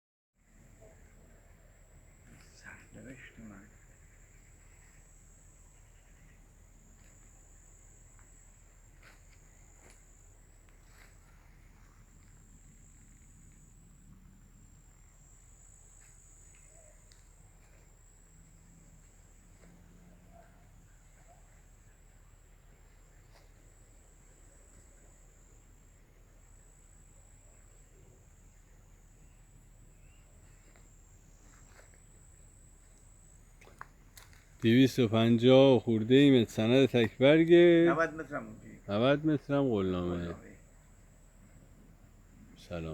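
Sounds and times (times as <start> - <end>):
crickets trilling: 0.4 - 42.9
insects chirring: 0.4 - 42.9.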